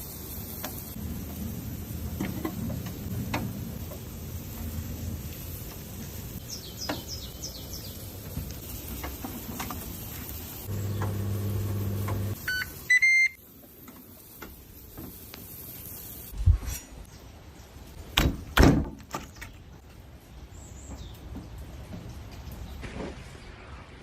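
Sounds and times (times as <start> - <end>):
microwave oven humming: 10.7 - 13.3
short beeps: 12.4 - 13.4.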